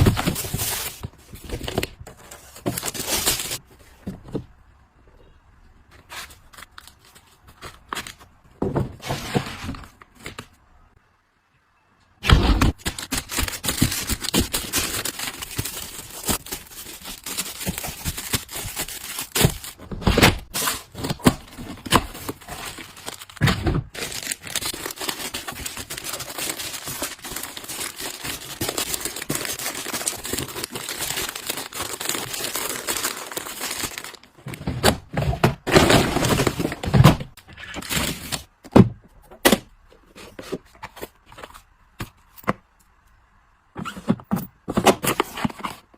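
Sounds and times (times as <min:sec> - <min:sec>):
packaging crinkling and tearing: 0:12.8 - 0:34.3.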